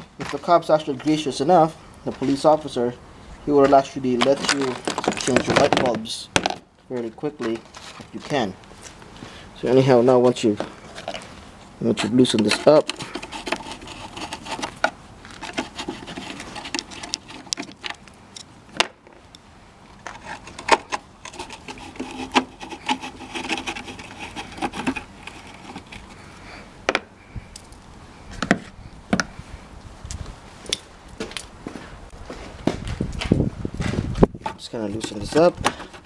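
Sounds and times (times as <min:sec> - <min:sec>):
rubbing and scraping: 0:00.0 - 0:02.9, 0:03.5 - 0:18.2, 0:20.0 - 0:27.4, 0:32.4 - 0:36.0.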